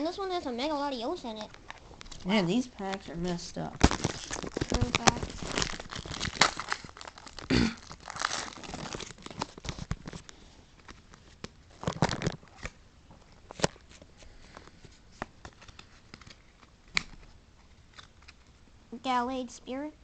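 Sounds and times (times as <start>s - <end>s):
cards being handled: 3.8s - 6.9s, 13.4s - 18.5s
foil wrapper tearing and crinkling: 3.8s - 12.8s.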